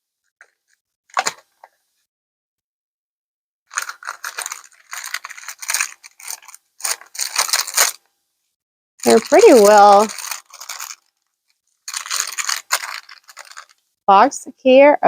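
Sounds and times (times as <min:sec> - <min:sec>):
packaging rustling and crinkling: 0:03.7 - 0:08.0, 0:09.0 - 0:13.8.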